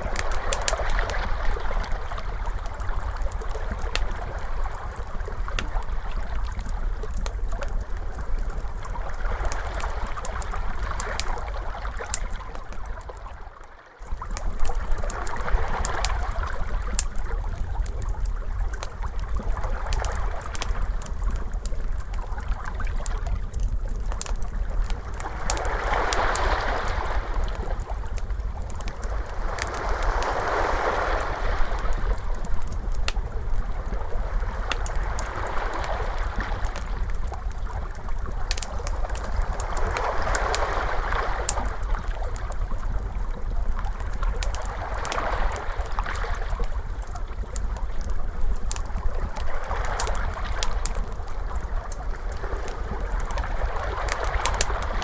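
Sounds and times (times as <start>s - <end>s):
steady low rumble: 0.0s - 13.2s, 14.1s - 55.0s
fire crackling: 0.0s - 13.4s, 14.0s - 55.0s
ocean waves washing in: 25.0s - 37.5s, 38.4s - 43.1s.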